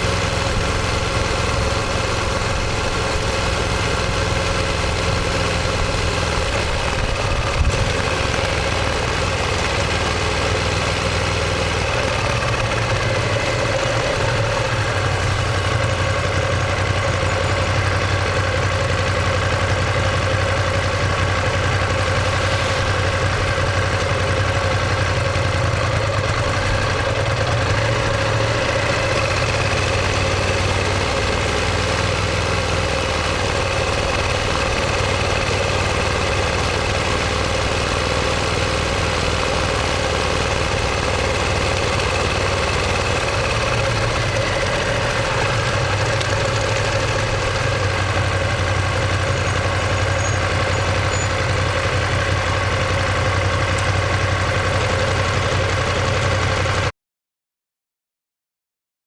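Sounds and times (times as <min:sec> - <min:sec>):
motorcycle engine running: 0:00.0 - 0:56.9.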